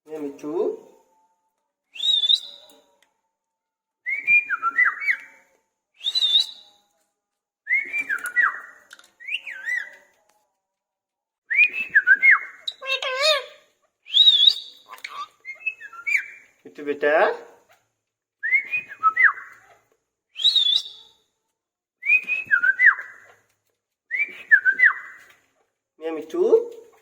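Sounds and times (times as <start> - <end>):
parrot whistling: 20.4 - 21.0.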